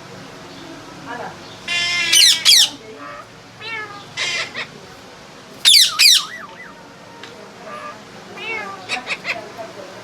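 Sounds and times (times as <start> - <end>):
parrot squawking: 1.7 - 4.7, 5.6 - 6.7, 7.7 - 9.4.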